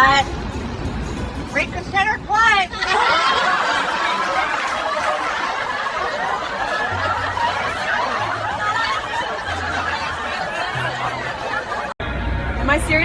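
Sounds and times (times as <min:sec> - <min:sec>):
people laughing: 0:02.7 - 0:12.0.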